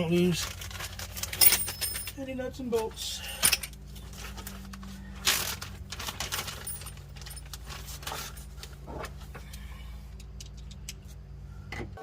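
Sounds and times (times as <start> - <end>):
small metal hardware clinking: 1.4 - 2.2.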